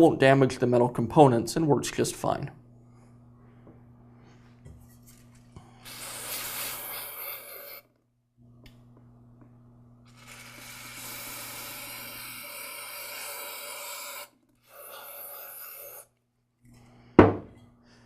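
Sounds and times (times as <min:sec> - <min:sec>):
hissing spray: 0:05.8 - 0:07.8.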